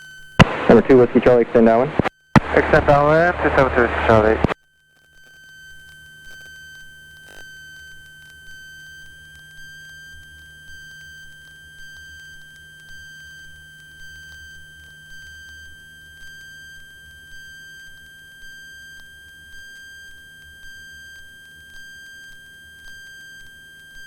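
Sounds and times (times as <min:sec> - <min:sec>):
low engine rumble: 0:02.4 - 0:04.4.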